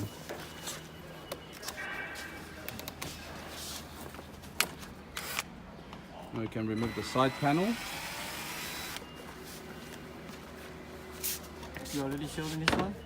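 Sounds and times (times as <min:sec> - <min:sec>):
faint handling noises: 0:00.0 - 0:05.0.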